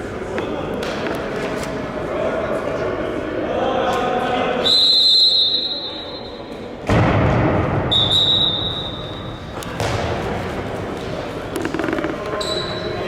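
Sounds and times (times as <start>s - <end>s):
referee's whistle blast: 8.0s - 9.2s
hall noise: 11.1s - 13.0s
handball bouncing: 11.6s - 12.6s.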